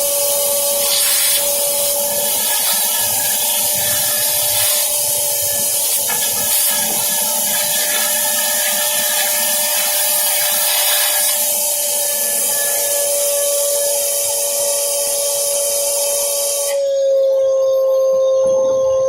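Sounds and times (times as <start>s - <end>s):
shop vac running: 0.0s - 18.6s.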